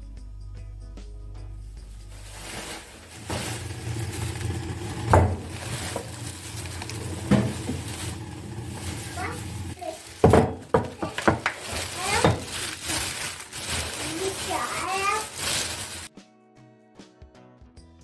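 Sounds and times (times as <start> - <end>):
objects knocking and clunking: 2.4 - 16.1.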